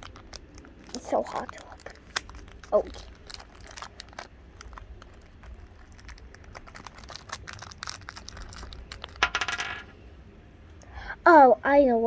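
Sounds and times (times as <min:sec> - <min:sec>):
plastic wrapper crinkling: 0:00.0 - 0:09.3.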